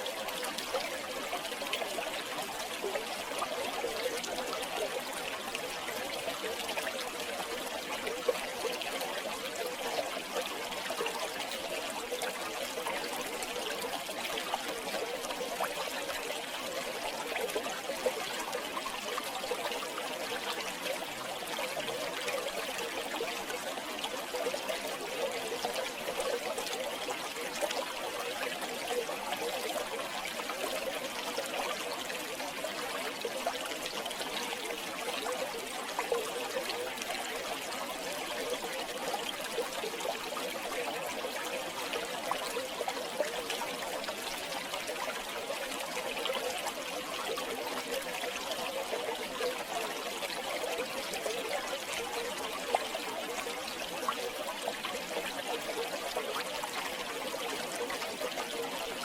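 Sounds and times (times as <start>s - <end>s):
river babbling over stones: 0.0s - 59.0s.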